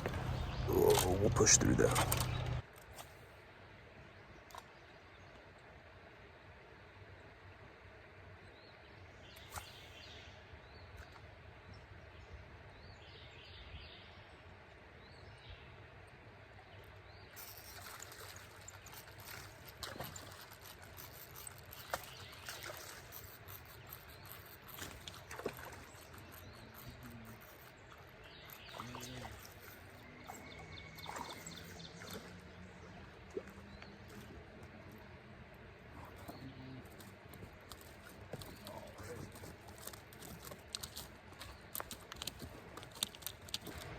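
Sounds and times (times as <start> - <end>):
bird calls: 0.0 - 2.6, 20.1 - 32.4
clicks and rustles: 17.4 - 29.9, 36.9 - 43.9
trickling water: 17.4 - 35.1, 36.0 - 43.9.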